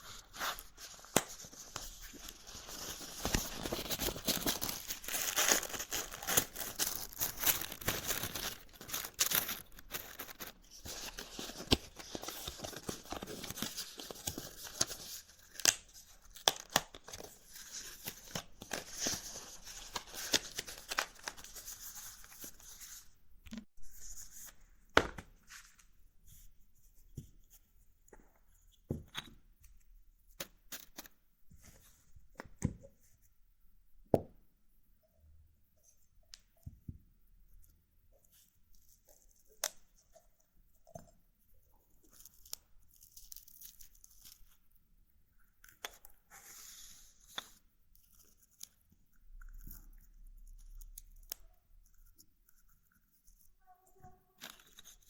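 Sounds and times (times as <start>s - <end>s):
dry herb and rolling paper crackling: 0.0s - 21.6s.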